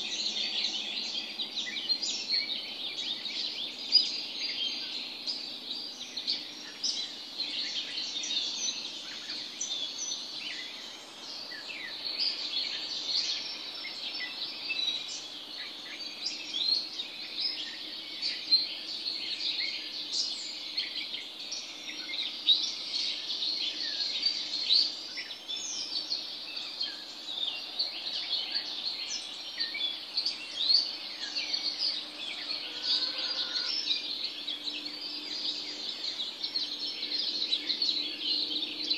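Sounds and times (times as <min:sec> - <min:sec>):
birds chirping and whistling: 0:23.8 - 0:38.9.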